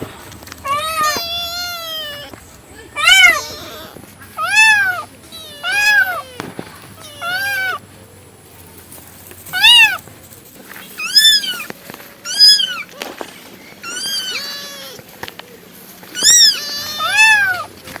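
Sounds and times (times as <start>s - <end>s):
cat meowing: 0.6s - 2.4s, 3.0s - 7.8s, 9.5s - 10.0s, 11.0s - 13.1s, 13.8s - 15.1s, 16.1s - 17.7s.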